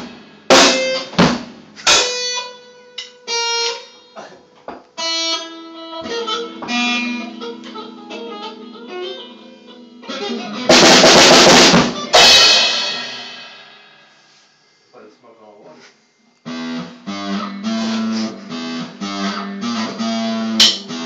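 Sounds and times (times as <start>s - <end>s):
crash of drums and cymbals: 0.0s - 2.3s, 10.7s - 14.4s, 20.6s - 20.9s
plucked guitar-like notes: 1.9s - 13.4s, 16.5s - 21.0s.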